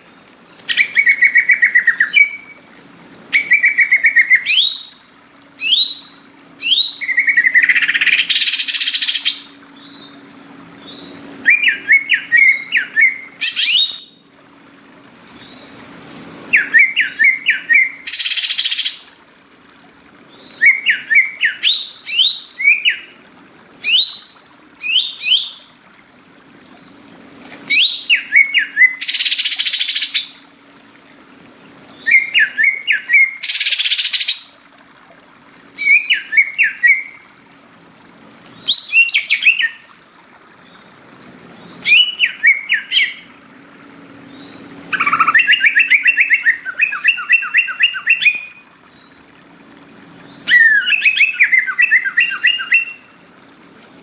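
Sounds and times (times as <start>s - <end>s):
bird singing whistled notes: 3.4s - 10.2s, 10.8s - 14.2s, 16.5s - 19.0s, 20.4s - 23.2s, 23.8s - 25.7s, 27.7s - 30.4s, 31.9s - 34.6s, 35.8s - 37.2s, 38.6s - 39.8s, 41.8s - 43.3s, 44.3s - 49.2s, 50.4s - 53.1s.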